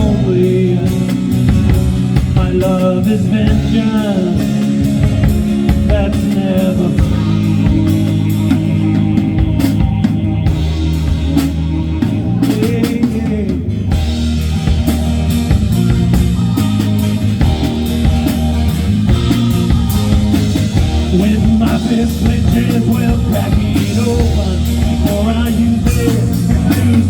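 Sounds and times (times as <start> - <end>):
drum kit hits and fills: 0.0 - 27.0
rock band playing: 0.0 - 27.0.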